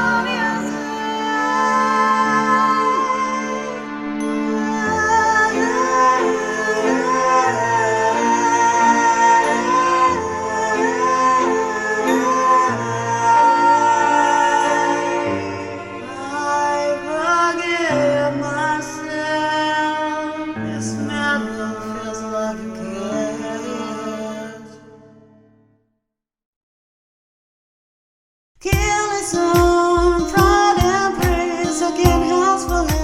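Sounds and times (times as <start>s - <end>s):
person singing: 0.0s - 25.2s, 28.6s - 33.0s
instrumental backing with bass: 28.7s - 33.0s.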